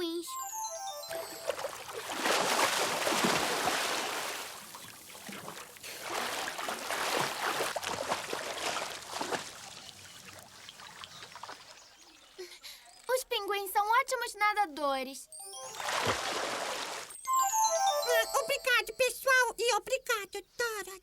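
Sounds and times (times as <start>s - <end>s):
water splashing and sloshing: 1.0s - 12.2s, 15.7s - 17.2s.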